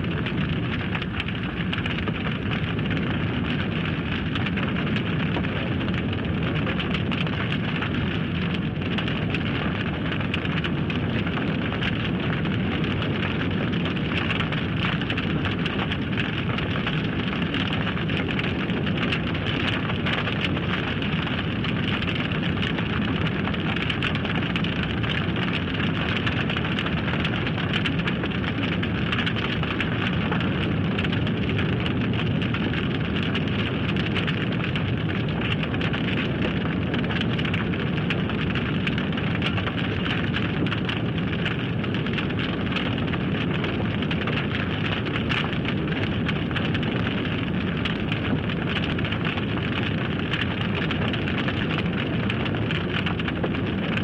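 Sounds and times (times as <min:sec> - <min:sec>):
fire roaring and crackling: 0:00.0 - 0:54.0.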